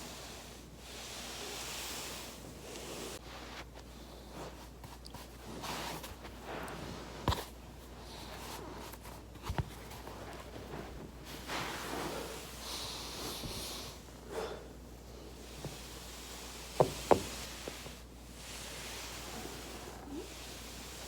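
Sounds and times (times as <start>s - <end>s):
body rustling on foam roller: 0.7s - 14.2s, 15.1s - 21.0s.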